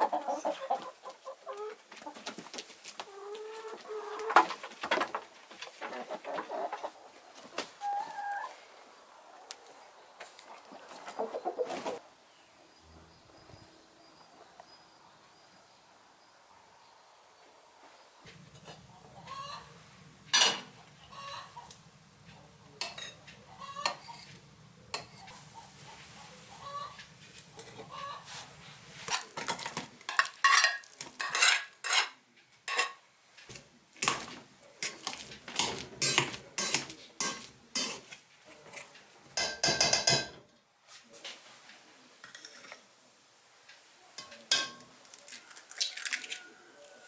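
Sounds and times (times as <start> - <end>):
pots and dishes clinking: 20.3 - 20.8, 22.8 - 25.2, 29.1 - 33.0, 34.0 - 38.1, 39.4 - 40.4, 44.2 - 44.9.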